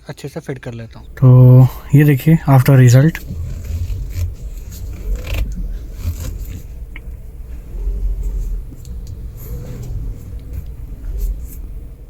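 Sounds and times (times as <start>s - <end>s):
car engine rumbling: 0.0s - 12.0s
faint clicks and knocks: 3.1s - 12.0s.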